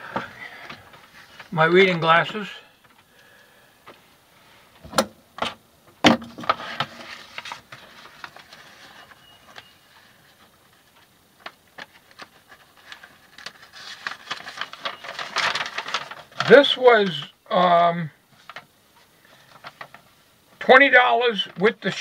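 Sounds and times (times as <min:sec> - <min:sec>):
rustling: 0:06.2 - 0:17.3, 0:18.3 - 0:20.3.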